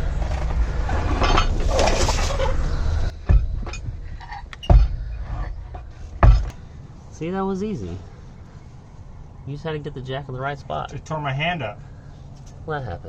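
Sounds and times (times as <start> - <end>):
heavy thumps: 0.0 - 6.6
steady low rumble: 0.0 - 12.7.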